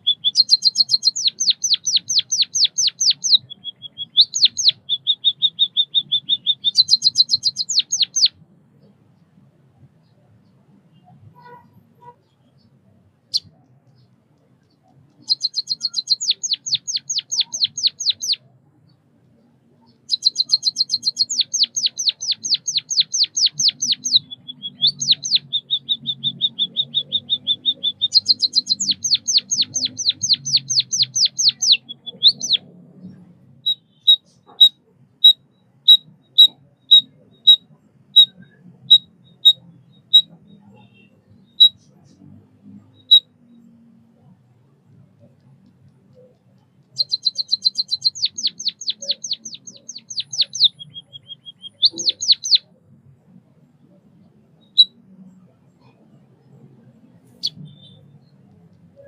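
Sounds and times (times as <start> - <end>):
rapid bird trill: 0.0 - 8.4, 15.1 - 18.5, 19.8 - 32.7, 33.6 - 41.8, 47.0 - 52.7
bird singing high chirps: 0.0 - 9.0, 10.0 - 42.3, 42.9 - 44.3, 46.1 - 52.8, 53.8 - 59.0.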